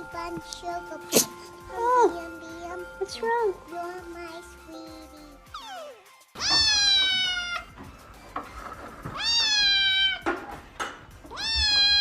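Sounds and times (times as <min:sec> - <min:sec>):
cat meowing: 0:05.5 - 0:07.7, 0:09.0 - 0:10.4, 0:11.3 - 0:12.0.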